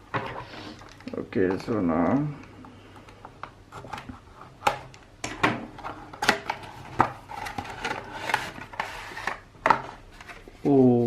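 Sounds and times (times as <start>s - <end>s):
packaging scraping and rustling: 5.7s - 11.0s.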